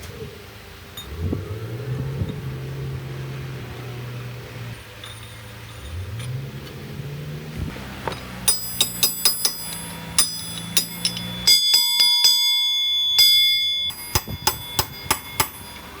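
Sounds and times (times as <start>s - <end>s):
low engine hum: 0.0s - 11.6s
hammer blows on steel: 8.2s - 16.0s.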